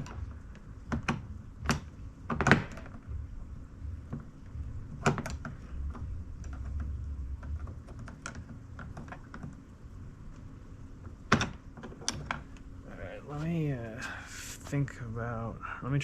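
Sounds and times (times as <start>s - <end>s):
clicks and taps of door parts: 0.9s - 3.1s, 4.9s - 9.6s.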